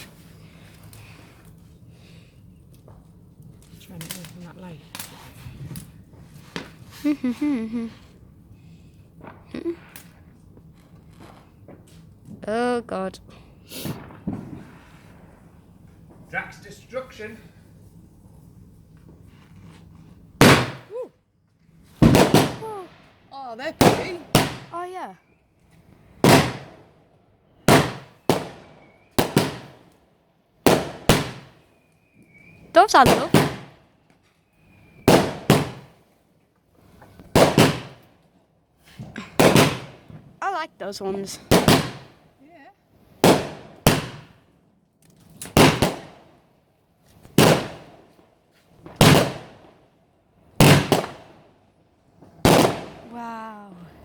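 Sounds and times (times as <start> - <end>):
fireworks bangs with echo: 13.8 - 16.6, 20.4 - 20.9, 22.0 - 25.1, 26.2 - 26.9, 27.6 - 29.9, 30.6 - 31.6, 32.8 - 33.8, 35.0 - 36.1, 37.3 - 38.1, 39.4 - 40.3, 41.2 - 42.2, 43.2 - 44.4, 45.5 - 46.3, 47.4 - 48.2, 48.8 - 49.8, 50.6 - 51.4, 52.4 - 53.1.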